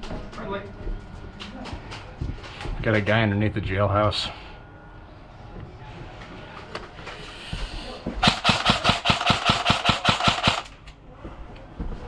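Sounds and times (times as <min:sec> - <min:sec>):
airsoft gun firing: 0:08.2 - 0:10.8.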